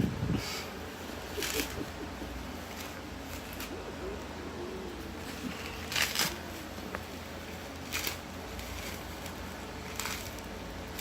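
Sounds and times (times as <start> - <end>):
bubble wrap crackling: 1.1 - 2.0, 2.6 - 3.8, 5.0 - 11.0.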